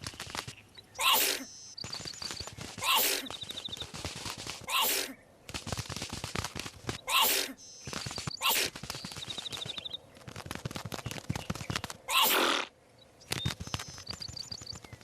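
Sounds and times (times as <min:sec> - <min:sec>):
patter of small clicks: 0:00.0 - 0:00.8, 0:01.7 - 0:04.7, 0:05.4 - 0:07.0, 0:07.7 - 0:12.1, 0:13.2 - 0:15.0
rapid ticking chirp: 0:00.0 - 0:12.6, 0:13.2 - 0:15.0
cartoon sneezes: 0:01.0 - 0:01.5, 0:04.7 - 0:05.2, 0:07.1 - 0:07.6, 0:12.1 - 0:12.7.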